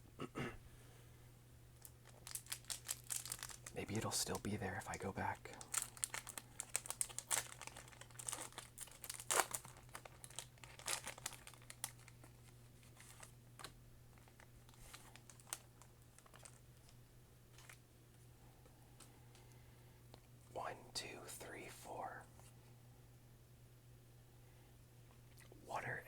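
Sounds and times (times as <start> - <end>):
foil wrapper crinkling: 1.8 - 17.8.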